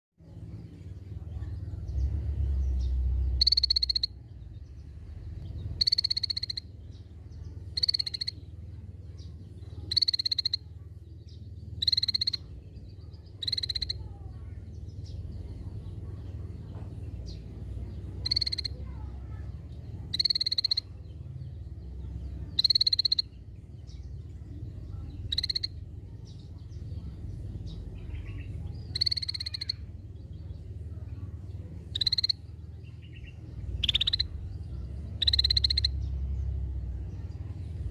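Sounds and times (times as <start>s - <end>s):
steady low hum: 0.2s - 37.9s
bulbul buzzy rattling calls: 3.2s - 4.3s, 5.5s - 8.6s, 9.2s - 14.2s, 17.2s - 19.1s, 19.8s - 24.2s, 24.9s - 36.2s.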